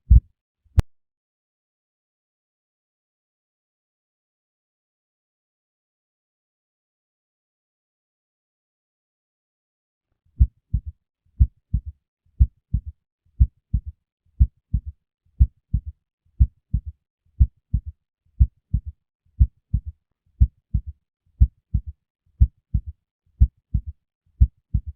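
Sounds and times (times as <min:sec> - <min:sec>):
heartbeat: 0:00.1 - 0:00.3, 0:10.4 - 0:24.9.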